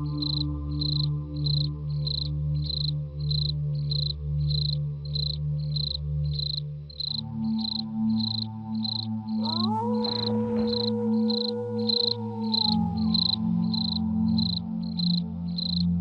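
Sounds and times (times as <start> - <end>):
cricket chirping: 0.0 - 16.0
low droning chord: 7.2 - 16.0.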